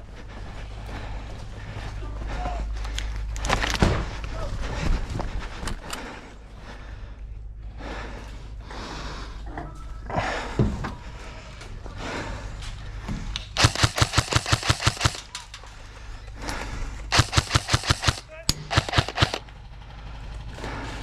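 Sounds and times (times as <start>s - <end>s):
airsoft rifle full-auto burst: 13.6s - 15.4s, 17.1s - 19.5s.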